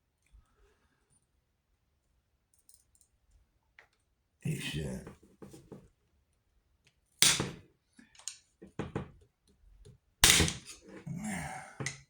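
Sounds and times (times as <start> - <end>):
sharp knocks: 10.2 - 10.7.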